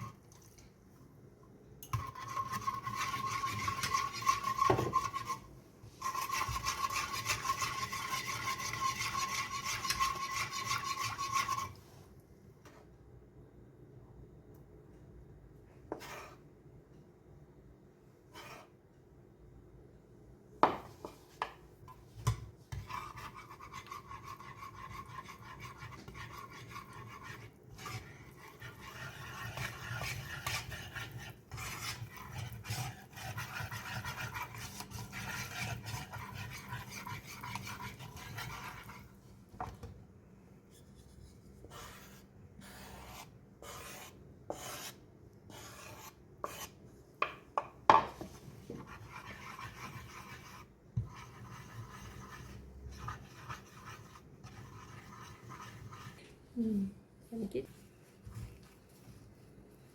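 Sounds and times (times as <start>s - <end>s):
rubbing and scraping of food: 2.0s - 11.9s, 22.7s - 39.5s, 48.2s - 56.4s.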